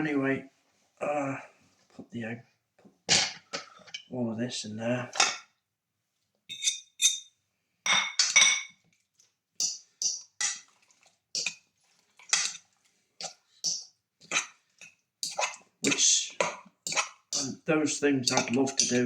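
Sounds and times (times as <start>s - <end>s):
utensil clinking against dish: 15.2s - 17.6s, 18.2s - 19.0s.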